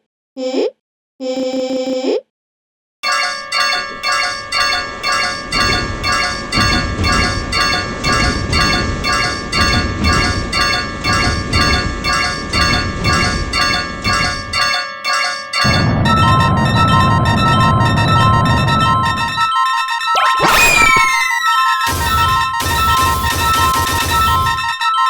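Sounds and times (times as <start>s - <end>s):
railroad crossing warning bell: 3.0s - 20.2s, 21.5s - 25.0s
low rumble: 15.7s - 19.5s.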